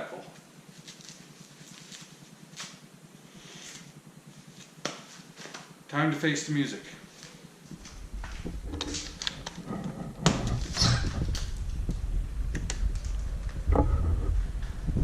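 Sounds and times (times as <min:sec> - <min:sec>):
wind rumbling on microphone: 0:07.7 - 0:15.0.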